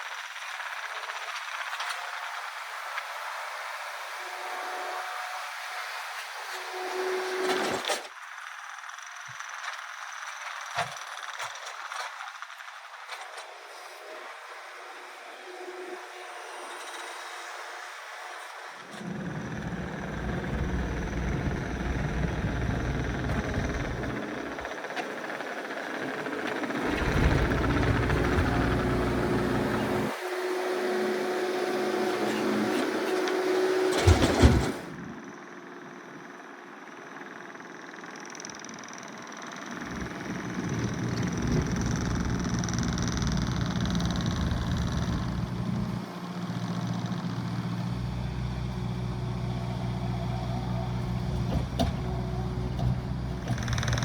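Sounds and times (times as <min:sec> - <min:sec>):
steady hum: 0:19.0 - 0:25.4
diesel engine rumbling: 0:19.0 - 0:30.2, 0:39.7 - 0:54.0.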